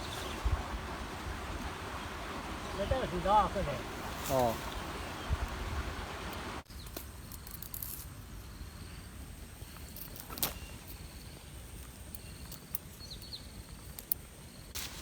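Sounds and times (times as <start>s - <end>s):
low wind rumble: 0.0s - 6.6s.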